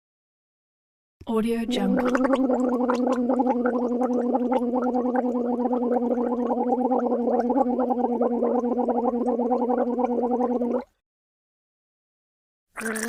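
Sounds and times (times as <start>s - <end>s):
person gargling: 1.6s - 11.0s, 12.8s - 13.0s.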